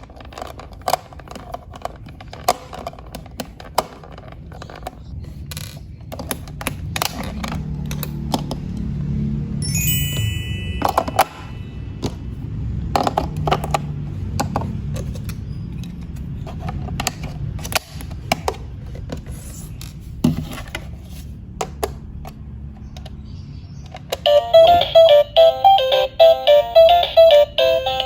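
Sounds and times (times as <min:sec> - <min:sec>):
plastic toy buttons clicking: 0:23.9 - 0:28.0
electronic beeping tune: 0:24.3 - 0:28.0.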